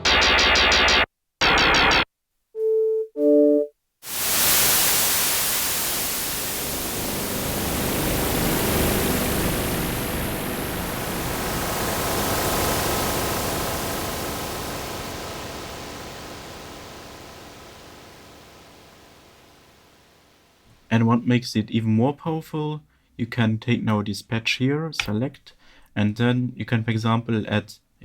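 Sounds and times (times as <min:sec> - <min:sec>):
hissing synthesizer patch: 0:04.1 - 0:19.7.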